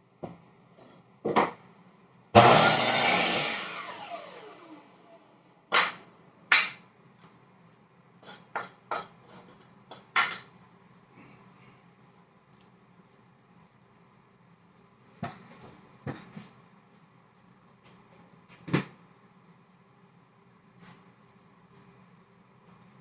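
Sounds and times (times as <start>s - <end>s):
power tool motor whine: 2.4s - 5.2s.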